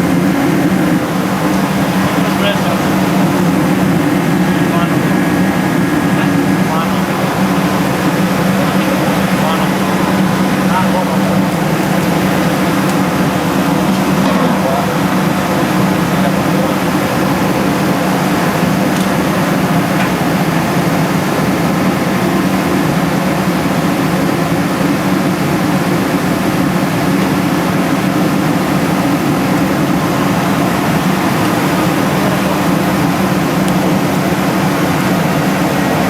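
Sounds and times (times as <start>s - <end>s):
rushing air: 0.0s - 22.5s
industrial fan humming: 0.0s - 36.0s.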